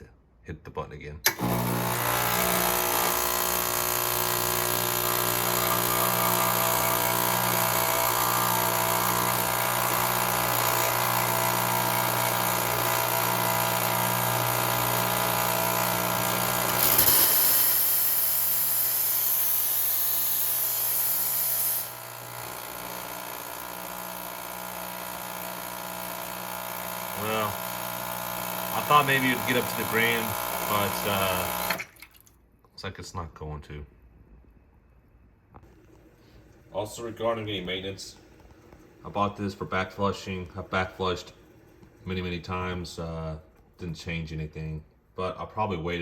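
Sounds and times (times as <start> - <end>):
espresso machine pump humming: 1.3 - 31.8, 35.6 - 42.8
loud hiss: 16.7 - 22.2.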